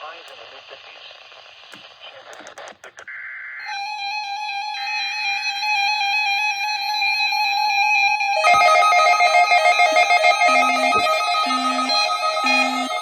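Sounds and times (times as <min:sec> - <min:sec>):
pulsing beeps: 0:08.4 - 0:13.0
steady electronic alert tone: 0:08.4 - 0:13.0.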